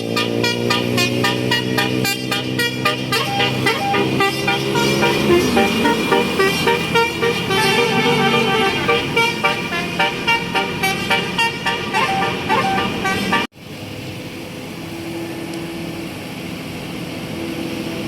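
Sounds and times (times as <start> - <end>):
bus musical horn melody: 0.0 - 13.5.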